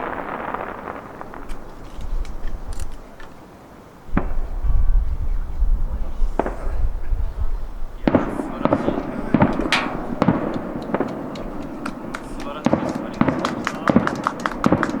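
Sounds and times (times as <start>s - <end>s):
firework shells bursting: 0.0s - 4.9s, 6.3s - 7.0s, 8.0s - 15.0s
low rumbling boom: 4.1s - 14.0s.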